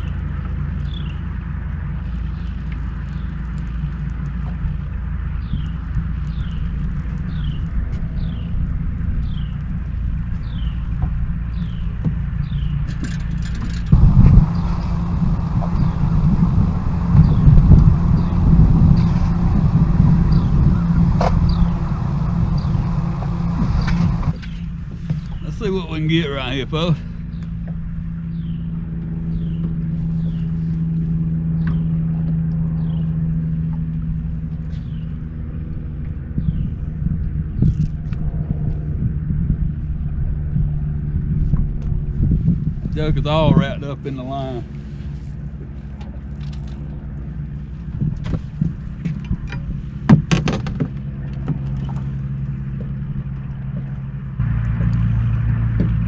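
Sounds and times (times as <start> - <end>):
low wind rumble: 0.0 - 56.0
boat motor running: 9.4 - 56.0
knocks and clicks from gear: 12.9 - 25.4, 48.0 - 52.1
motor humming: 13.9 - 24.6.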